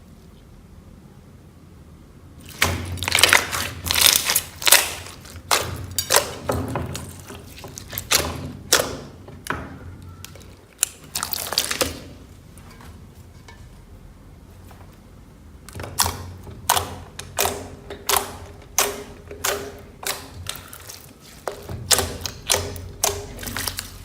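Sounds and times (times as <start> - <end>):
slime squishing and popping: 2.4 - 12.2, 15.6 - 24.0.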